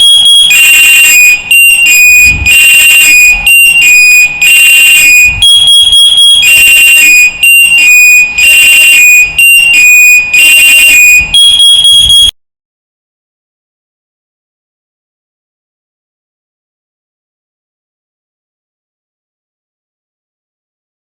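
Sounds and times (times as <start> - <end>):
shrill lift warning beeps: 0.0 - 12.3.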